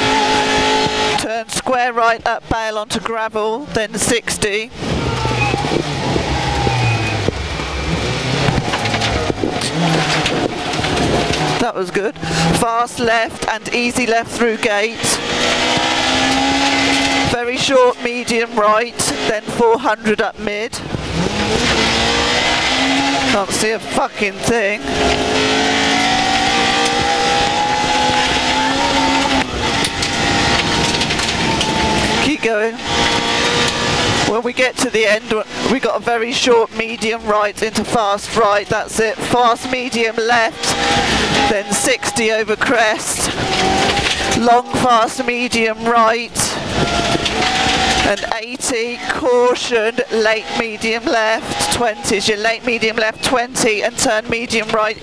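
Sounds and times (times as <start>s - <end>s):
rally car engine revving: 0.0s - 55.0s.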